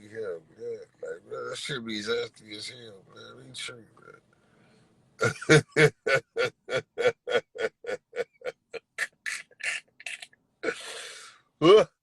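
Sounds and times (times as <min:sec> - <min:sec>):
man laughing in rhythmic bursts: 0:05.2 - 0:11.0.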